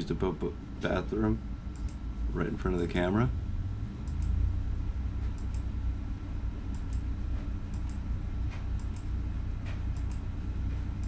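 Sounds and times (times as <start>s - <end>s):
steady low hum: 0.0s - 11.0s
faint mouse clicks: 1.7s - 2.0s, 4.0s - 4.4s, 5.3s - 5.7s, 6.7s - 7.1s, 7.7s - 10.2s.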